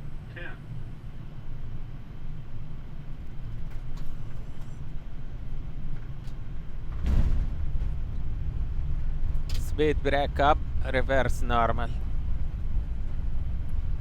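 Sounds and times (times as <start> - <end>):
aircraft cockpit rumble: 0.0 - 14.0
wheels touching down thump: 5.7 - 9.8.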